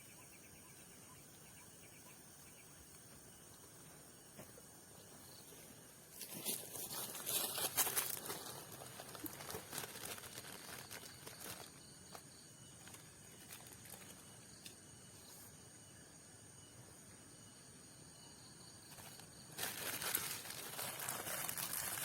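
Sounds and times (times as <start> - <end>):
night insects droning: 0.0 - 22.0
dry rustling and crackling: 6.2 - 14.4, 18.9 - 22.0.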